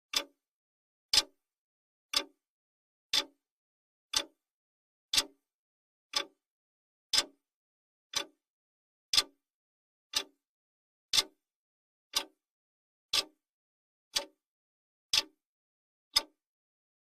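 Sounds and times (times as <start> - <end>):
clock ticking: 0.1 - 0.3, 3.1 - 3.4, 4.1 - 4.3, 5.1 - 5.3, 6.1 - 6.3, 7.1 - 7.4, 8.1 - 8.3, 12.1 - 12.3.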